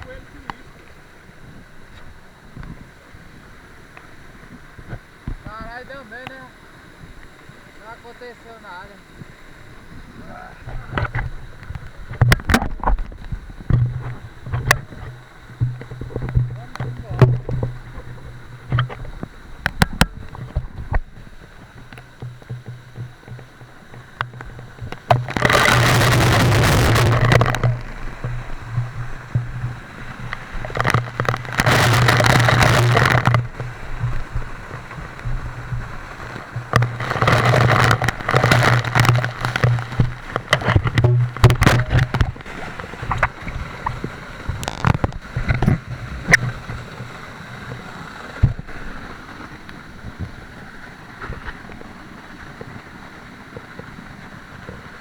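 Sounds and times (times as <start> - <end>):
waterfall rushing and splashing: 0.0 - 55.0
gear clicks and knocks: 10.9 - 46.6.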